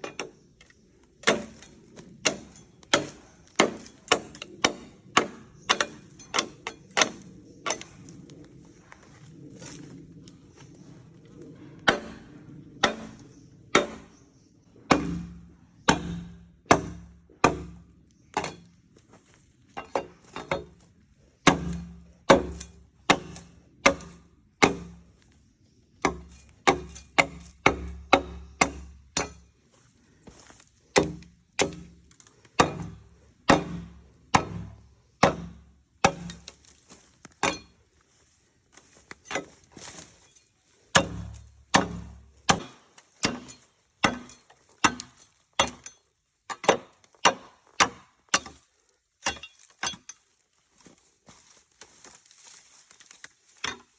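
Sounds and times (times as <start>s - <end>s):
bamboo being chopped: 1.2s - 8.1s, 12.8s - 14.2s, 14.9s - 18.7s, 19.3s - 25.2s, 26.0s - 29.5s, 30.3s - 37.8s, 40.9s - 50.1s, 50.8s - 53.9s.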